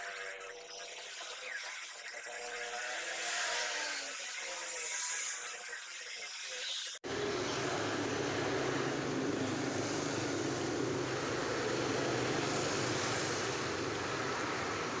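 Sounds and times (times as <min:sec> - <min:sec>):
scroll saw running: 0:00.0 - 0:07.0.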